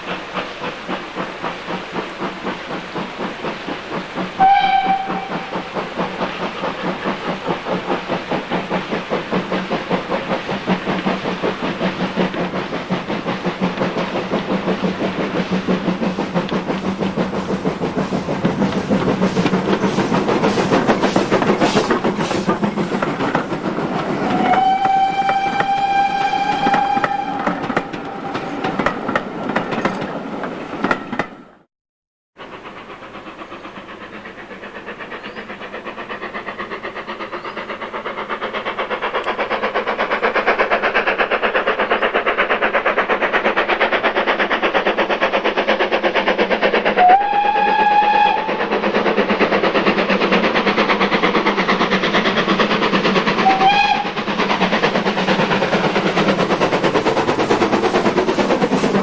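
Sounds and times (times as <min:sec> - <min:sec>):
steam locomotive exhaust beats: 0:00.0 - 0:31.7, 0:32.4 - 0:59.0
train clattering past: 0:00.0 - 0:31.7, 0:32.4 - 0:59.0
steam locomotive whistle: 0:04.4 - 0:05.7, 0:24.0 - 0:29.0, 0:46.9 - 0:48.6, 0:53.4 - 0:54.3.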